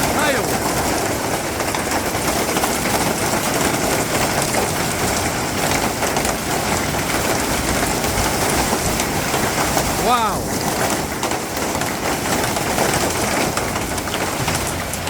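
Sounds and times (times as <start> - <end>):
hail clattering: 0.0 - 15.0
rushing storm noise: 0.0 - 15.0.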